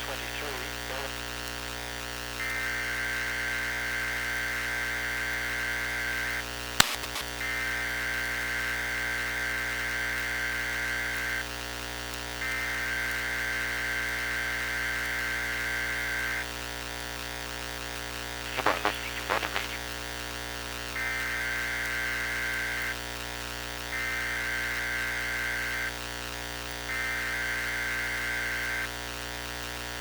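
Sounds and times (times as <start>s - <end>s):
crackling bursts: 0.0s - 1.2s, 6.8s - 7.4s, 18.4s - 20.0s
radio hum and hiss: 0.0s - 23.0s, 23.9s - 26.0s, 26.9s - 30.0s
high buzzing tone: 18.4s - 19.9s.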